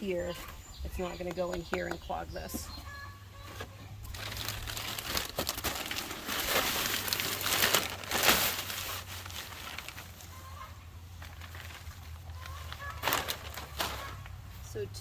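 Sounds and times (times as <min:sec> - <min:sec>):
plastic bag crinkling: 0:04.0 - 0:10.4, 0:11.2 - 0:14.4.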